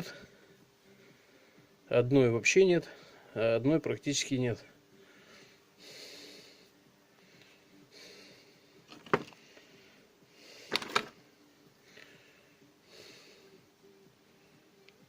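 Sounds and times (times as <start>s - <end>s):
soft nasal breaths: 0.0s - 1.9s, 4.7s - 15.0s
motor parts clicking: 10.7s - 11.1s.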